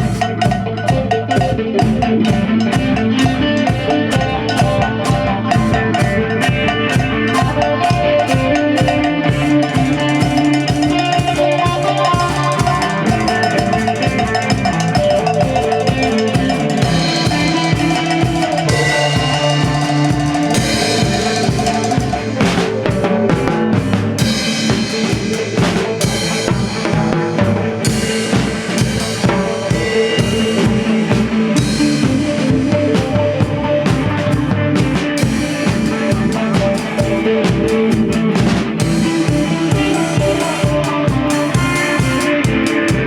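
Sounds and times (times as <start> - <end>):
drum kit beat: 0.0 - 43.0
sustained pitched instruments: 0.1 - 34.4.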